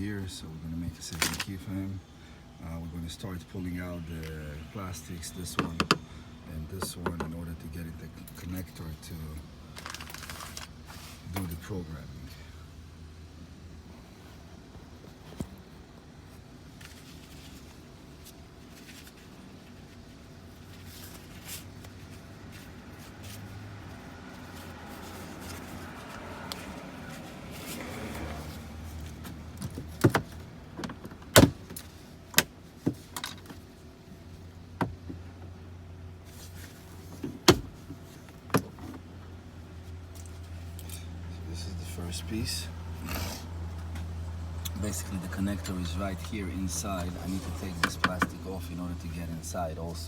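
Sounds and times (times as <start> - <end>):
plastic trim rustling and scraping: 1.1 - 1.6, 9.8 - 11.5, 16.8 - 30.4, 44.7 - 48.8.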